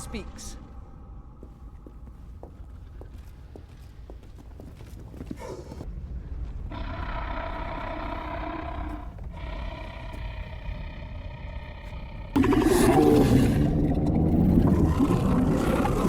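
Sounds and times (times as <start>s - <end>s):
deep rumble: 5.8s - 16.0s
dragon roars: 6.7s - 16.0s.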